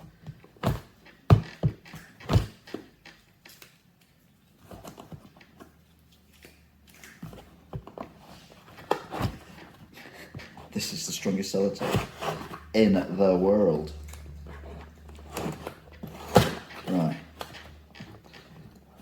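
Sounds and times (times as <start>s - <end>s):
scratching at taped box flaps: 11.7s - 12.7s.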